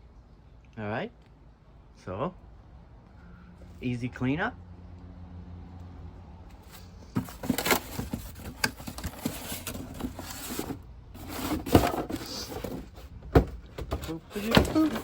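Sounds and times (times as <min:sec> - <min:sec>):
packaging rustling and crinkling: 0:07.1 - 0:13.0.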